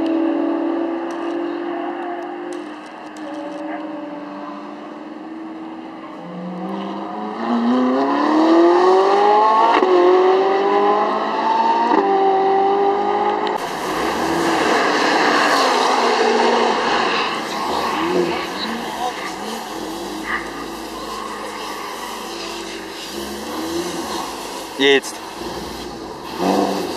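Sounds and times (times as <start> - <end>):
sports car engine accelerating: 0.0 - 26.9
loud rushing noise: 13.6 - 26.9.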